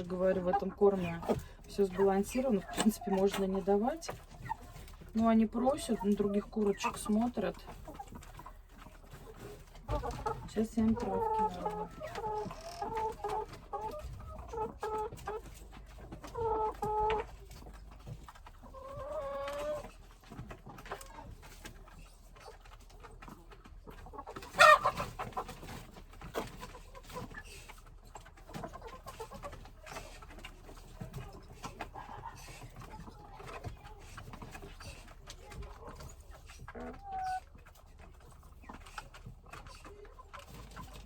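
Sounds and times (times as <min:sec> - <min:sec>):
chickens clucking: 0:00.0 - 0:41.0
chicken squawk: 0:24.4 - 0:25.4.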